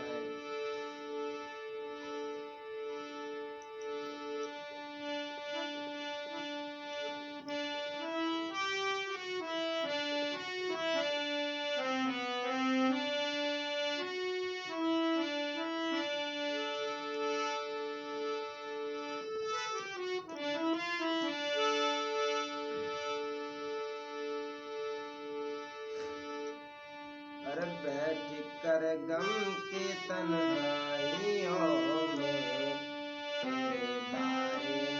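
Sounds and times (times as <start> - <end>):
reed keyboard melody: 0.0 - 34.9.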